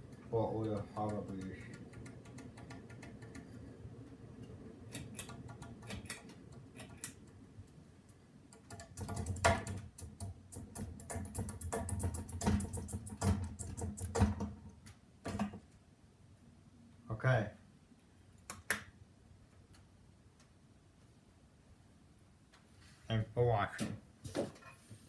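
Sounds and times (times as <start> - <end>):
sharp irregular clicks and taps: 0.0 - 15.8, 18.4 - 18.9
ceiling fan humming: 0.0 - 25.0.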